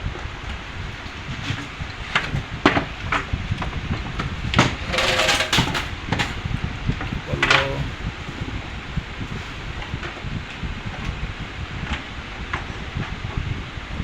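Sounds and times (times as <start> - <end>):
steady low rumble: 0.0 - 14.0.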